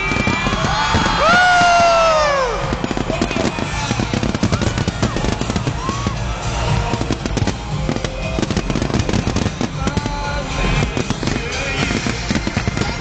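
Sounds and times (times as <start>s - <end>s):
fireworks bangs and crackles: 0.0s - 13.0s
music playing: 0.0s - 13.0s.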